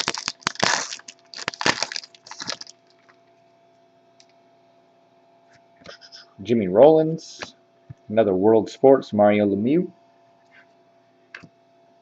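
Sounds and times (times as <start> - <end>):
foil wrapper crinkling and tearing: 0.0 - 3.1
faint steady hum: 0.0 - 12.0.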